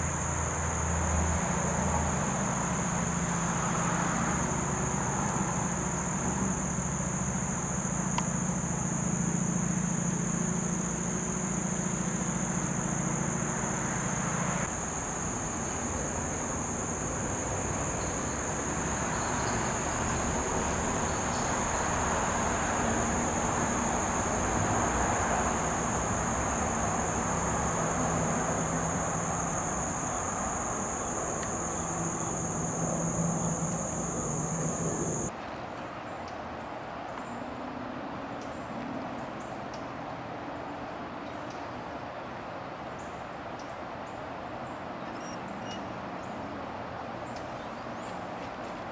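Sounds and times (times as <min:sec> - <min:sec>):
distant traffic rumble: 0:00.0 - 0:35.3
high-pitched insect chorus: 0:00.0 - 0:35.3.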